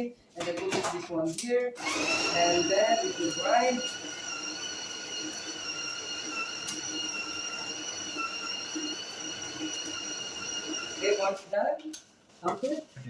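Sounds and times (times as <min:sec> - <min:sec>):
coffee grinder grinding beans: 0:01.8 - 0:11.5.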